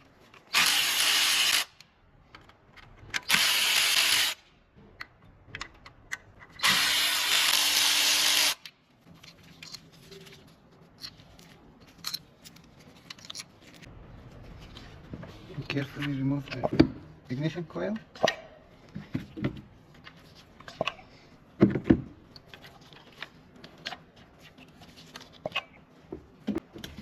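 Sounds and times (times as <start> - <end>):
tool and parts clicking: 0.3 - 10.2, 10.9 - 13.9.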